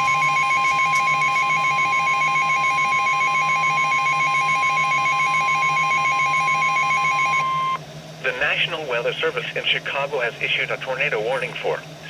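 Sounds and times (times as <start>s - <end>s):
warbling alert tone: 0.0s - 7.8s
steady high alert tone: 0.0s - 8.6s.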